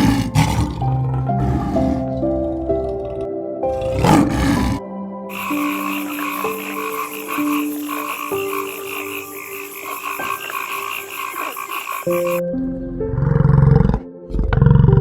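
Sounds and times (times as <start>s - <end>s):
frogs croaking in chorus: 0.0s - 3.0s, 3.7s - 12.4s.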